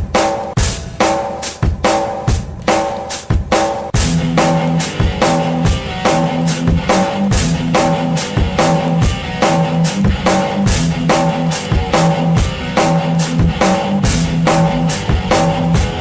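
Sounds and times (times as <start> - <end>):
drum kit beat: 0.0 - 16.0
bass line: 4.0 - 16.0
guitar: 4.0 - 16.0.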